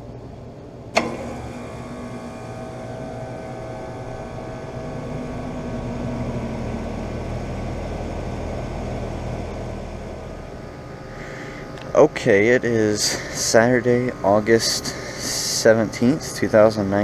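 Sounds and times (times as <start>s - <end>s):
air conditioner units humming: 0.0s - 17.0s
low electrical drone: 0.0s - 17.0s.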